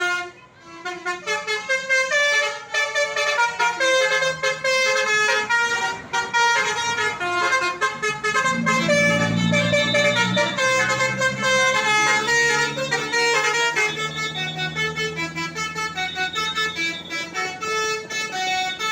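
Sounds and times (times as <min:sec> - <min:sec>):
bus horn playing a melody: 0:00.0 - 0:18.9
low engine rumble: 0:04.3 - 0:18.9.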